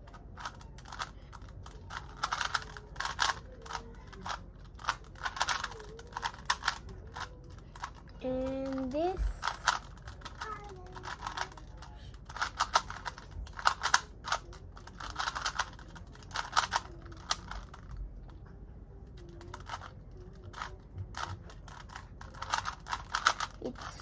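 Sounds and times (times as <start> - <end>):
puzzle cube plastic clicks: 0.0 - 18.0, 19.2 - 23.9.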